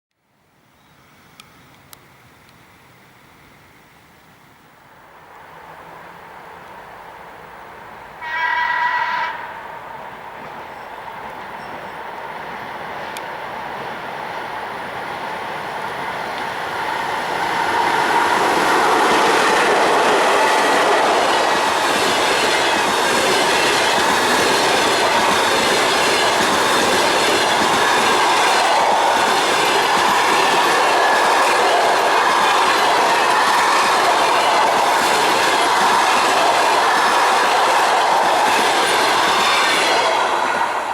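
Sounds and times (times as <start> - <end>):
train wheels clattering: 15.9 - 40.9.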